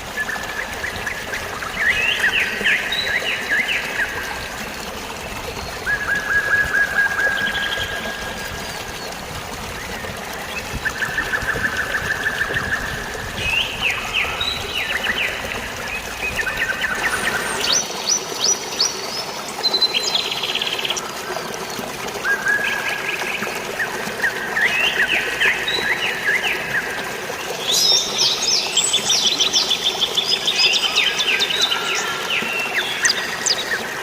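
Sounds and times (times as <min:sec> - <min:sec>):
drizzling rain: 0:00.0 - 0:34.0
flowing water: 0:00.0 - 0:34.0
songbirds chirping and trilling: 0:10.0 - 0:21.8.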